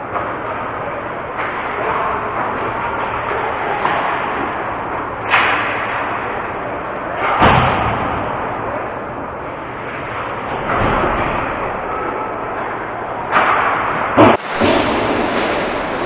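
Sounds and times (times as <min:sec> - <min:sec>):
rink noise: 0:14.2 - 0:16.0.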